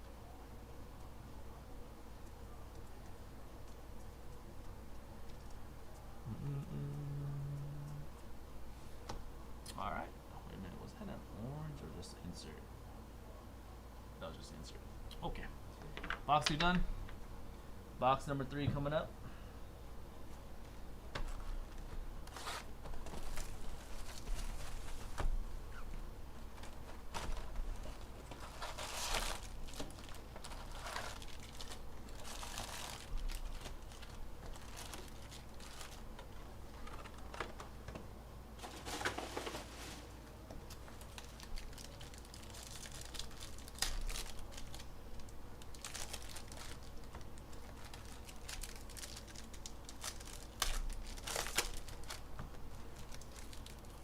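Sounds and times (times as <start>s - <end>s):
plastic packaging crinkling and tearing: 21.3s - 25.3s, 26.5s - 37.7s, 38.6s - 54.0s.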